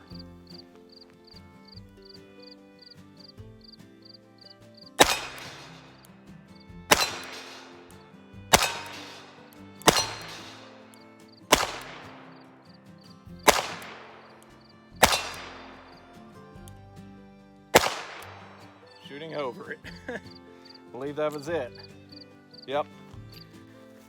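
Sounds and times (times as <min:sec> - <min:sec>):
revolver shots: 0:05.0 - 0:06.2, 0:06.9 - 0:12.7, 0:13.4 - 0:16.2, 0:17.8 - 0:18.8.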